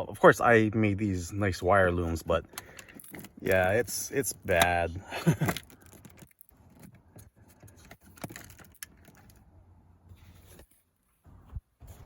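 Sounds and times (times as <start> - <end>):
wiring and connectors rattling: 1.5 - 9.5.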